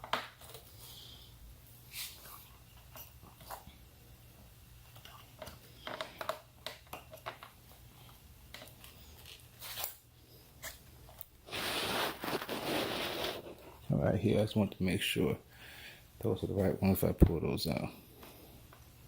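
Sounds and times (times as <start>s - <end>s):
rustling scrape: 11.4s - 13.9s.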